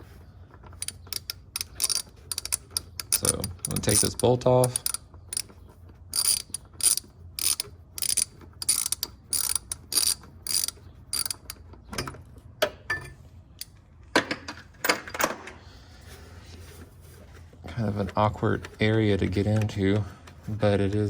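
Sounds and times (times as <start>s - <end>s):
ratchet pawl clicks: 0.8s - 5.5s, 6.1s - 11.6s.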